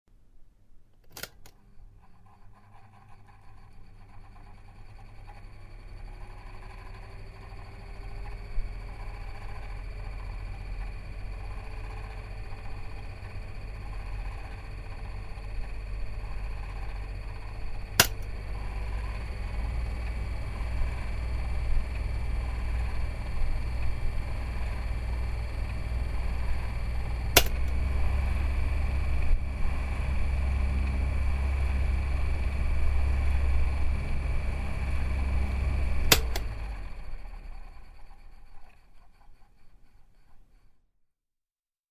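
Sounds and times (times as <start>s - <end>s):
fan switch clicks: 1.0s - 1.6s, 18.0s - 18.4s, 27.3s - 27.9s, 34.4s - 36.7s
table fan humming: 1.0s - 40.6s.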